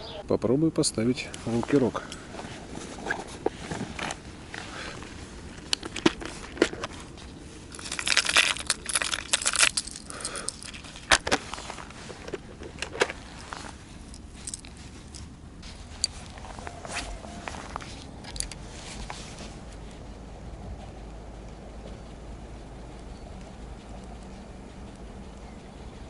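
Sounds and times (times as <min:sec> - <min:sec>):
fishing tackle clicks and rattles: 0:07.7 - 0:11.5, 0:12.1 - 0:15.3, 0:17.8 - 0:18.6.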